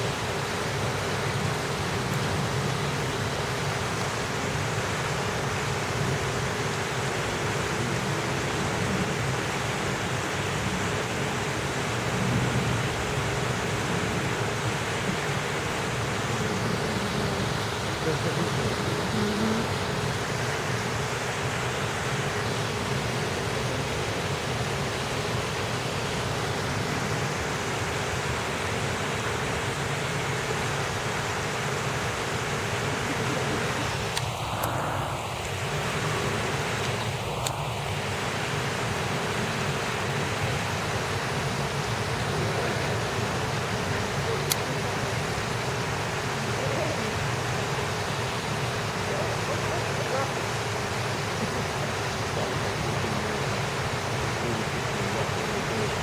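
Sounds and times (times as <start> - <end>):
steady rushing outdoor noise: 0.0 - 56.0
faint murmur of voices: 13.9 - 21.6, 32.6 - 35.0, 41.7 - 56.0.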